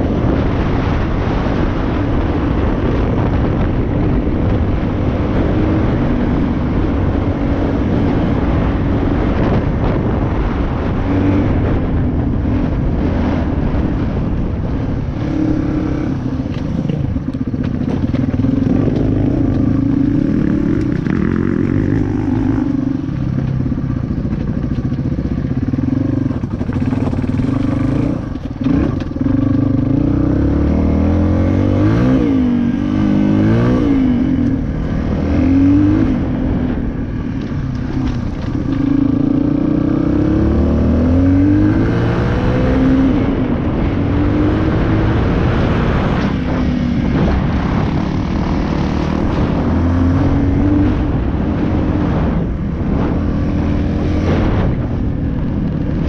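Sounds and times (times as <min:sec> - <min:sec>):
dirt bike engine revving: 0:15.0 - 0:56.0.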